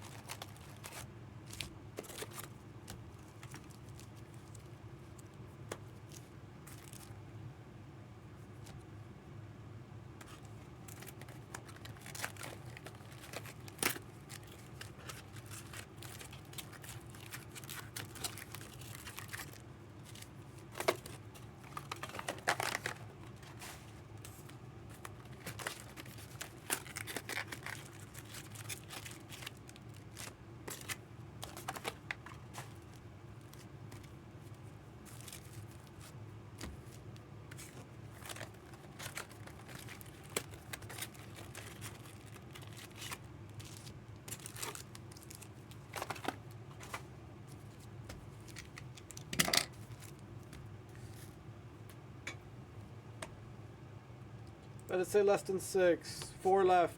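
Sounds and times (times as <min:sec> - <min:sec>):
packaging crinkling and tearing: 0:00.0 - 0:07.2, 0:10.2 - 0:51.4
steady low hum: 0:00.0 - 0:56.9.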